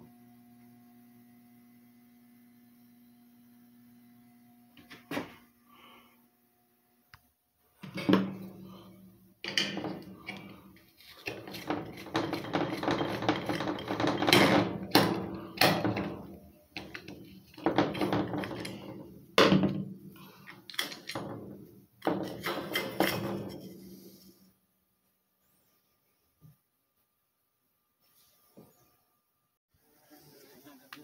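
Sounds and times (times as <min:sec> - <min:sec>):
metal parts knocking and scraping: 0:09.4 - 0:19.8, 0:20.4 - 0:23.8.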